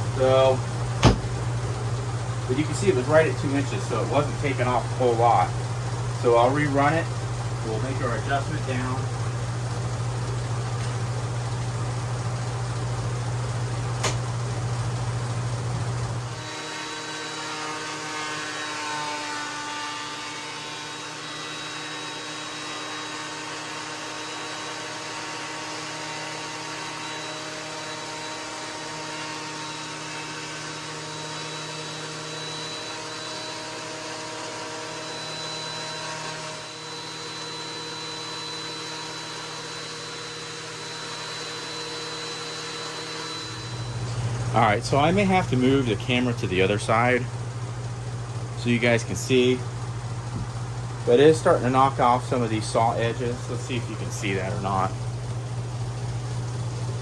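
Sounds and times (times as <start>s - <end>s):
thickness planer motor whine: 0.0s - 11.0s, 16.0s - 57.0s.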